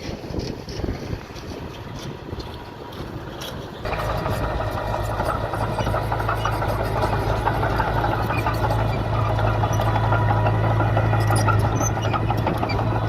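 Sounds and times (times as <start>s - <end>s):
diesel engine clattering: 0.0s - 13.0s
wind rumble on microphone: 0.0s - 13.0s.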